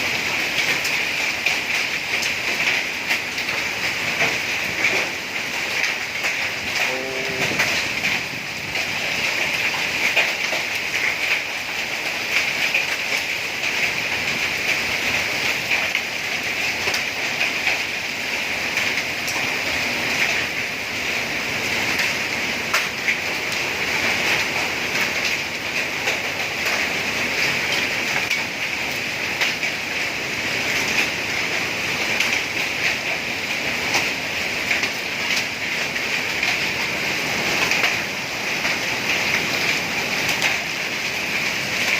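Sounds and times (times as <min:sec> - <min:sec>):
heavy rain with hail: 0:00.0 - 0:41.9.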